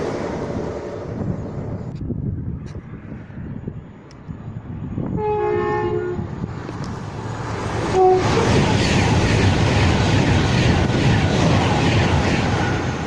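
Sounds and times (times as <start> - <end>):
train wheel and rail noise: 0.0 - 13.0
two-tone train horn: 5.1 - 6.4, 7.9 - 8.6.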